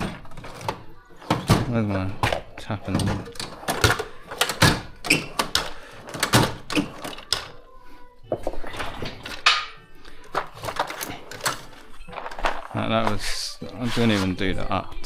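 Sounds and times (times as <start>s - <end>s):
metal tools clattering and knocking: 8.3s - 14.4s.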